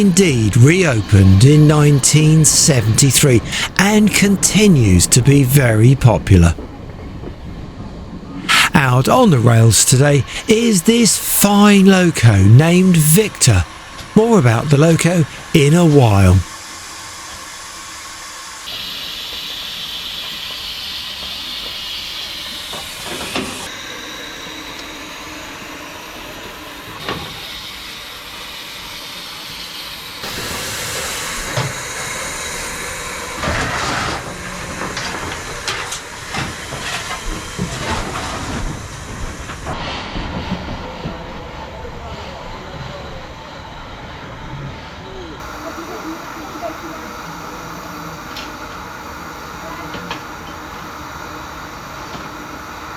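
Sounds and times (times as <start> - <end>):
steam locomotive hissing: 16.6 - 23.7, 27.2 - 43.2.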